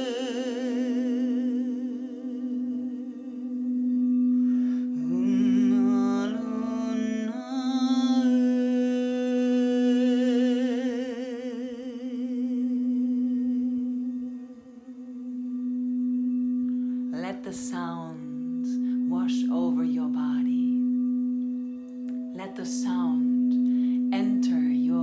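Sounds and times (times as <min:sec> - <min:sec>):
person humming: 0:00.0 - 0:04.2
singing bowls ringing: 0:00.0 - 0:25.0.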